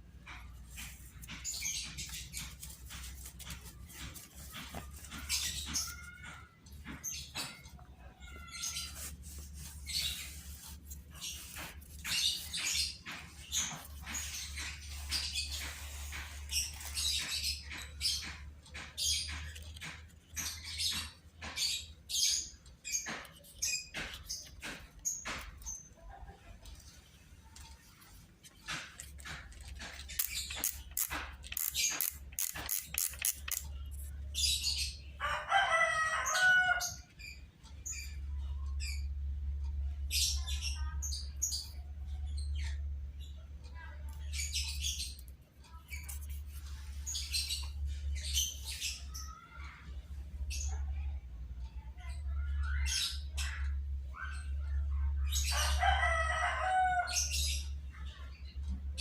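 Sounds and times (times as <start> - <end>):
birds chirping: 0.0 - 59.0
sharp clicks: 28.6 - 33.8
rooster crowing: 35.2 - 37.0, 55.6 - 57.2.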